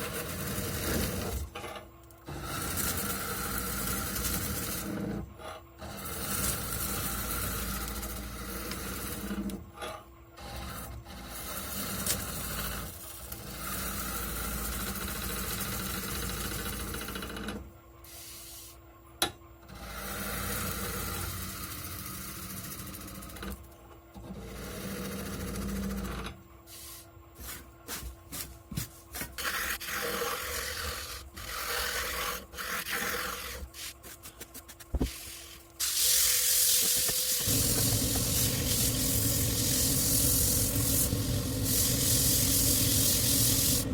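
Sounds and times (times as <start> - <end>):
tool rasping on spinning wood: 29.2 - 43.9.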